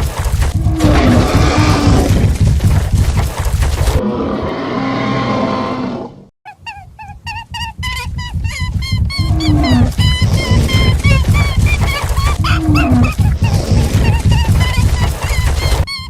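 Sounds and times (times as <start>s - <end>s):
heavy pounding footfalls: 0.0s - 4.0s, 8.4s - 15.8s
dinosaur roars: 4.0s - 6.3s
short high squeaks: 6.5s - 16.0s.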